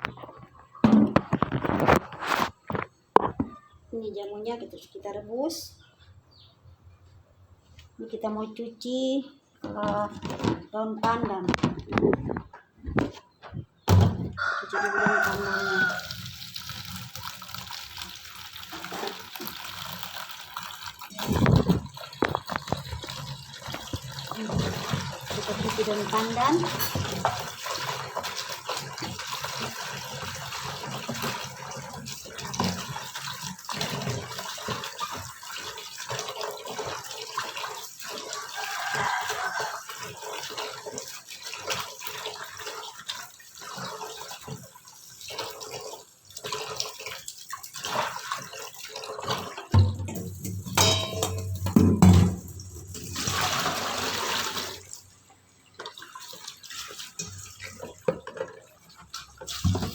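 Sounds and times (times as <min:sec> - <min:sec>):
clatter of handling in a sink: 0:00.0 - 0:03.6, 0:09.6 - 0:15.6, 0:16.8 - 0:37.0, 0:47.8 - 0:54.9, 0:55.8 - 0:59.9
running water: 0:08.1 - 0:59.9
leaves washed by hand in water: 0:14.4 - 0:55.1.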